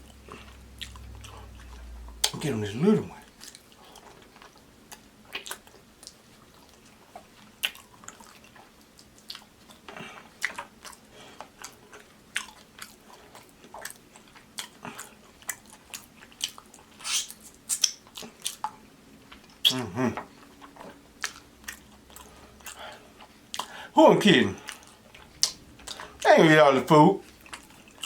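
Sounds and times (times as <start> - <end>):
person chewing close up: 0.0 - 2.4, 3.2 - 23.9, 24.6 - 26.3, 27.2 - 28.0
wet mouth clicks and lip smacks: 7.6 - 8.4, 16.4 - 18.8, 20.7 - 22.8, 24.6 - 26.2.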